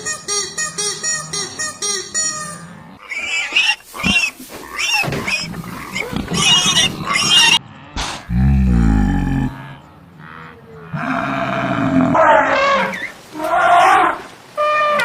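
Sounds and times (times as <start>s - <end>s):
shrill animal squeals: 0.6s - 7.6s
loud low animal call: 4.0s - 15.0s.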